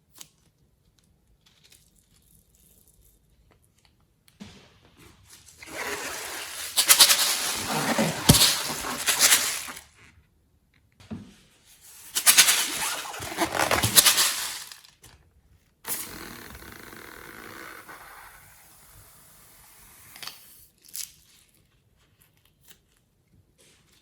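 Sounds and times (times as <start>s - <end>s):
slime squishing and crackling: 5.6s - 9.8s, 12.1s - 14.9s.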